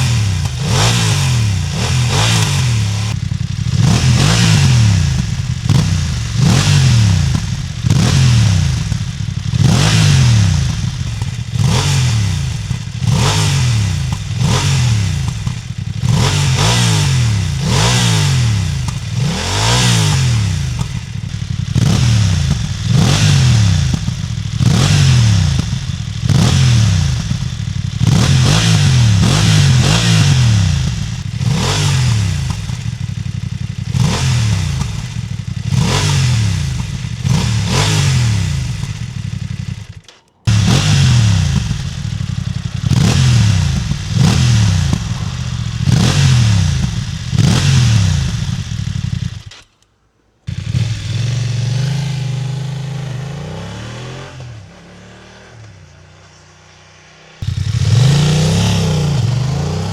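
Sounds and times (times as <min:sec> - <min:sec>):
motorcycle engine revving: 0:00.0 - 0:49.8, 0:50.4 - 0:59.9.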